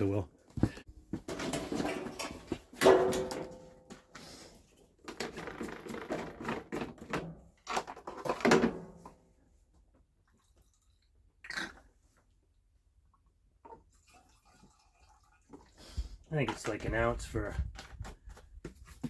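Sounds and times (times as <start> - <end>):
knocking and scraping objects: 0.5 - 4.2.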